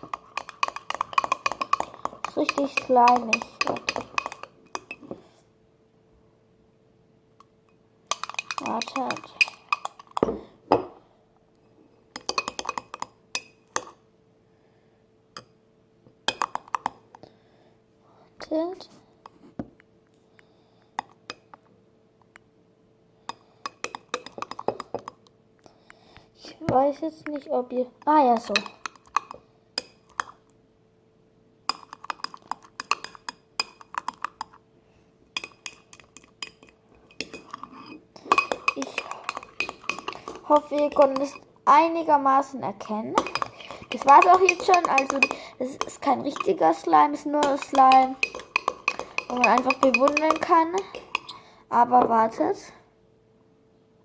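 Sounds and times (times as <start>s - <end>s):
utensil clinking against glass: 0.0s - 5.0s, 8.1s - 10.3s, 35.4s - 41.4s, 43.2s - 46.6s, 47.4s - 51.4s.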